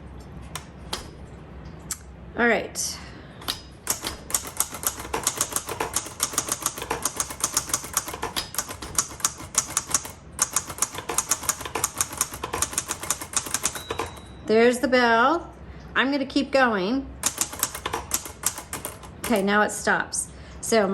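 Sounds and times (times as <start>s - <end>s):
manual typewriter typing: 3.4s - 14.4s, 17.2s - 19.6s.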